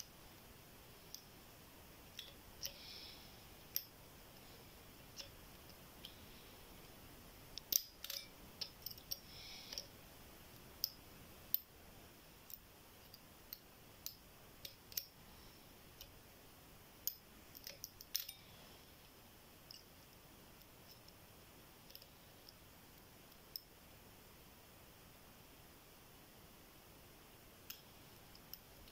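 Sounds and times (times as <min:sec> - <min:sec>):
lock pick clicking on pins: 0:07.6 - 0:09.9, 0:12.5 - 0:15.2, 0:17.0 - 0:18.4.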